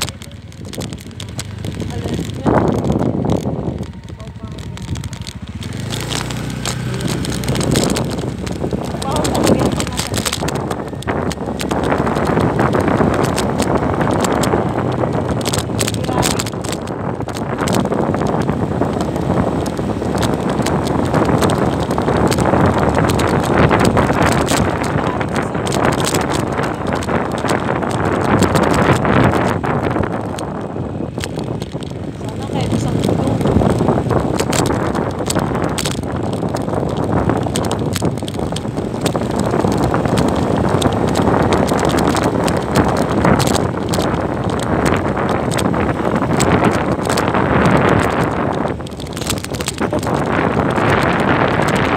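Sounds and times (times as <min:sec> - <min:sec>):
knocks and rattles: 0:00.0 - 0:51.9
motorcycle engine: 0:00.0 - 0:51.9
wind buffeting microphone: 0:00.0 - 0:51.9.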